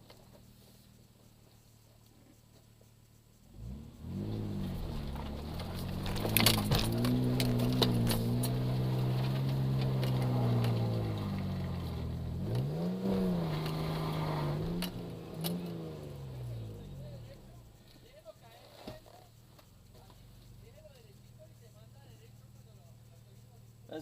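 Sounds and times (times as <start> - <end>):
truck engine pulling: 3.6 - 21.3
knocks and clatter over rough ground: 4.2 - 21.1.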